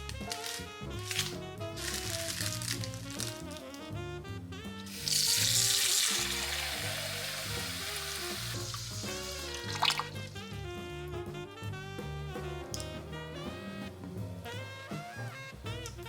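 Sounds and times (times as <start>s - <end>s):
background music: 0.0s - 16.0s
food sizzling in a pan: 4.9s - 10.2s.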